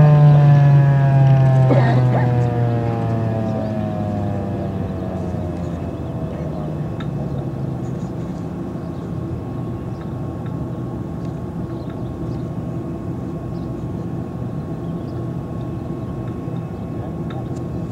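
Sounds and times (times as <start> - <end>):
siren winding down: 0.0 - 7.0
steady low hum: 0.0 - 17.9.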